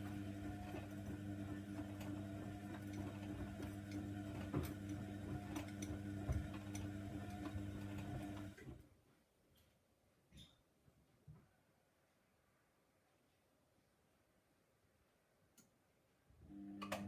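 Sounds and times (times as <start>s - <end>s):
washing machine motor humming: 0.0s - 8.8s, 16.5s - 17.0s.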